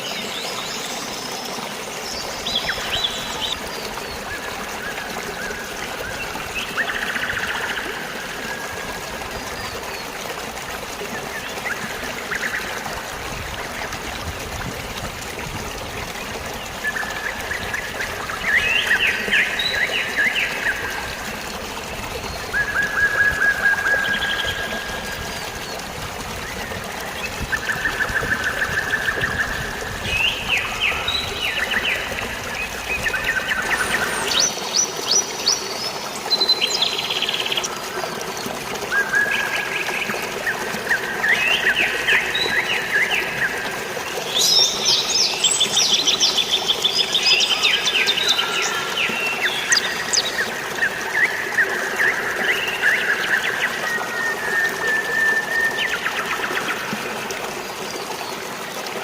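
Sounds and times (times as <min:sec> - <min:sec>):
flowing water: 0:00.0 - 0:59.0
birds chirping and trilling: 0:26.5 - 0:43.6, 0:44.2 - 0:56.9.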